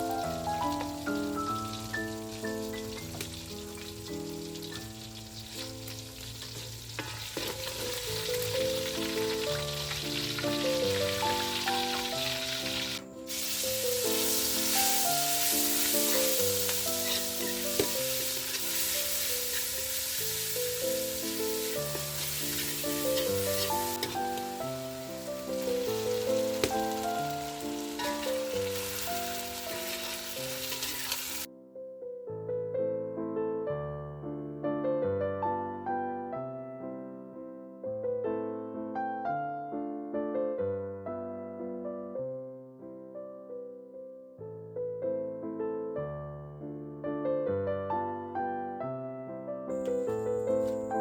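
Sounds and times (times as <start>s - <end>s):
instrumental music plucked melody: 0.0s - 20.0s, 20.6s - 30.8s
food sizzling in hot oil: 0.0s - 31.5s, 49.7s - 51.0s.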